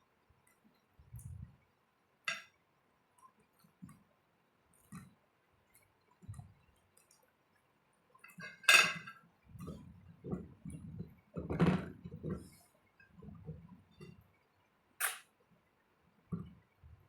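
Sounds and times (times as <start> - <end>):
clink against plate: 8.4 - 9.2.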